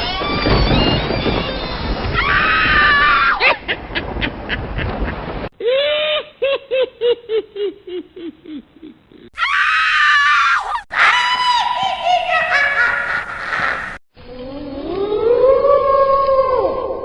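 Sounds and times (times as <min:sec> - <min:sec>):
loud high scream: 0:02.1 - 0:03.4, 0:09.4 - 0:11.9.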